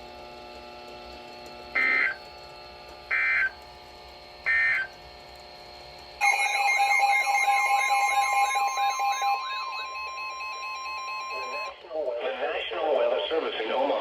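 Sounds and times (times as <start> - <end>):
faint steady hum: 0.0 - 14.0
data tone bursts: 1.8 - 2.2, 3.1 - 3.6, 4.5 - 4.9, 6.2 - 11.8
warbling electronic alert tone: 1.8 - 2.2, 3.1 - 3.5, 4.5 - 4.9, 6.2 - 11.7.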